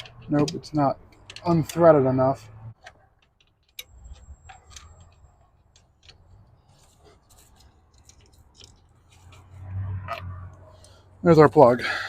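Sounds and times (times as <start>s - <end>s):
hand tools clicking on metal: 0.0s - 2.0s, 2.8s - 9.5s.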